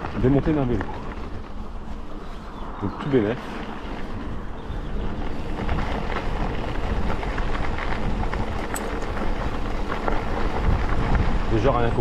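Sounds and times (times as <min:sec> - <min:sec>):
wind buffeting microphone: 0:00.0 - 0:12.0
tyres rolling over dirt: 0:03.2 - 0:12.0
bike rattles and knocks: 0:03.6 - 0:11.9.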